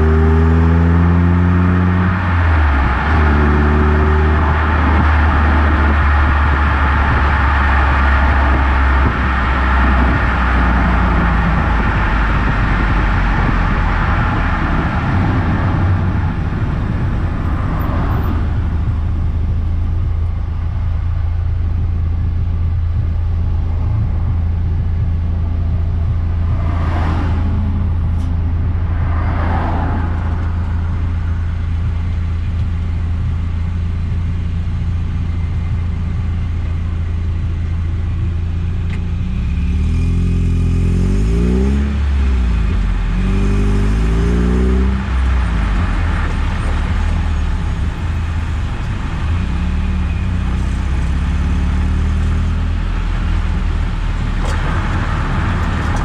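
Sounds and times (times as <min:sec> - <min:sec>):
car engine accelerating: 0:00.0 - 0:56.0
road noise: 0:00.0 - 0:56.0
whooshing swells: 0:14.0 - 0:20.2, 0:25.8 - 0:32.0.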